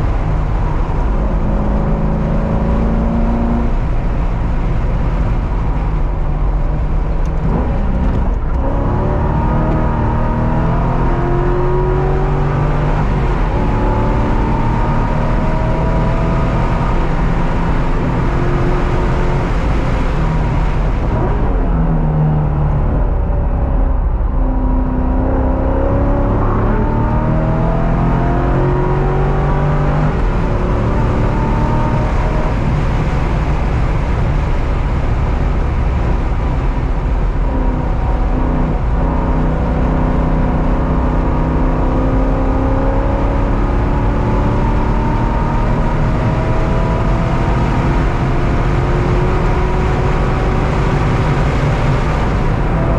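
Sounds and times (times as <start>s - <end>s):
car engine accelerating: 0.0s - 52.9s
road and wind noise: 0.0s - 52.9s.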